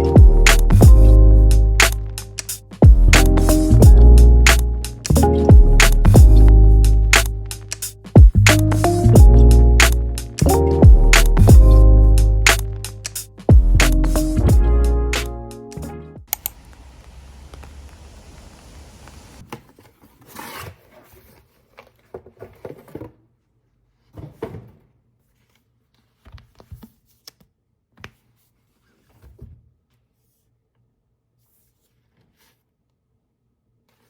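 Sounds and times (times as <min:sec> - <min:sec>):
background music: 0:00.0 - 0:16.2
faint hiss: 0:16.4 - 0:19.4.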